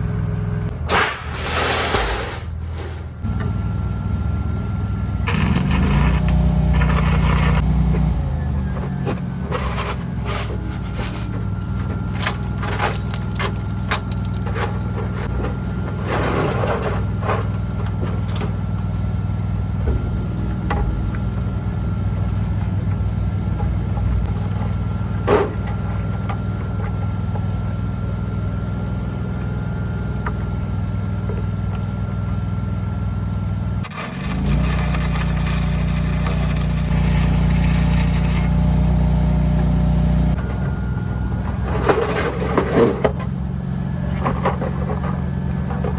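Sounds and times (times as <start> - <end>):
engine running steadily: 0.0 - 45.9
metal knocks clicks and scrapes: 5.3 - 7.6, 8.6 - 18.7, 33.8 - 38.6.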